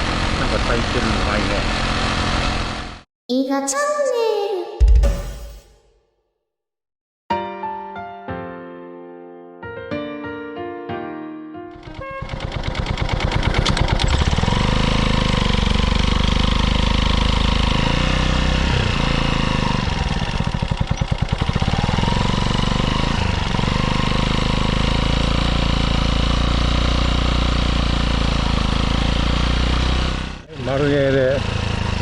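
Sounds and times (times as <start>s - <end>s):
motorcycle exhaust running: 0.0s - 3.0s, 11.8s - 32.0s.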